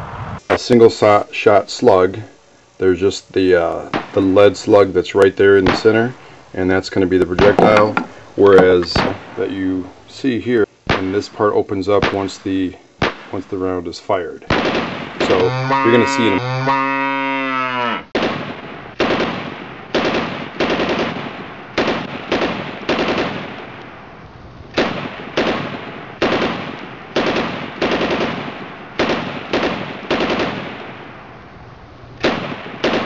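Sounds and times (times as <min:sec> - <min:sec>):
shotgun blasts with echo: 0:03.8 - 0:04.5, 0:05.6 - 0:06.1, 0:07.2 - 0:09.5, 0:10.9 - 0:13.6, 0:14.5 - 0:15.5, 0:18.2 - 0:23.8, 0:24.7 - 0:31.2, 0:32.2 - 0:33.0.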